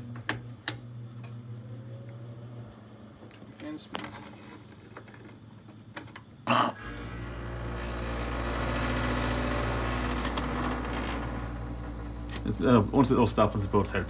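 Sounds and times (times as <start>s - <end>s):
air conditioner fan rushing: 4.9s - 14.0s
low compressor hum: 6.5s - 14.0s.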